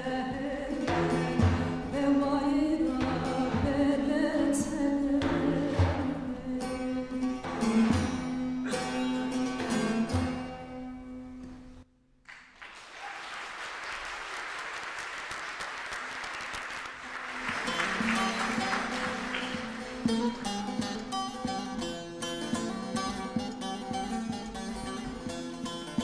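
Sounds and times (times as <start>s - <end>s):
plucked lute notes: 0.0s - 11.8s, 17.5s - 26.0s
strummed lute music: 0.0s - 11.8s, 17.4s - 26.0s
audience applauding: 12.3s - 21.1s.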